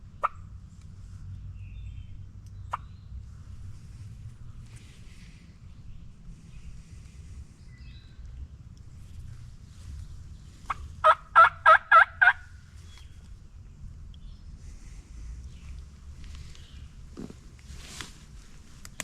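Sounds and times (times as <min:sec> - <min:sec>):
turkey gobbling: 0:10.7 - 0:12.5.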